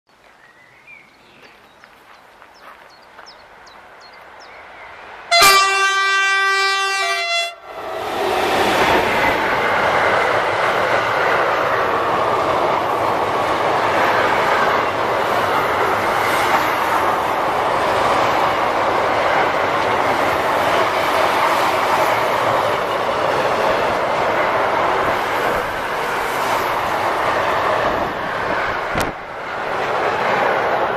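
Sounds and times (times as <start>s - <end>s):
freight train wheels on rails: 1.3s - 30.9s
locomotive horn blast: 5.3s - 7.8s.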